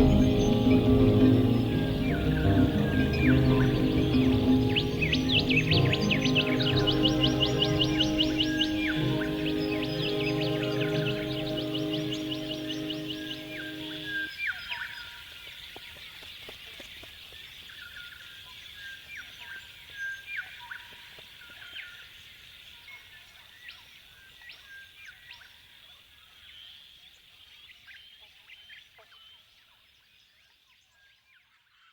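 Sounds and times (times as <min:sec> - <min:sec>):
birds chirping and whistling: 0:00.0 - 0:14.0.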